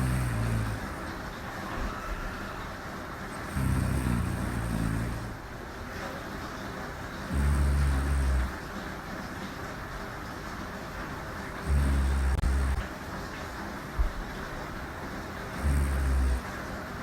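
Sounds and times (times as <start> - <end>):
woman snoring: 0.0 - 1.2, 3.3 - 5.4, 7.3 - 8.6, 11.6 - 12.9, 15.5 - 16.5
background hiss: 0.0 - 17.0.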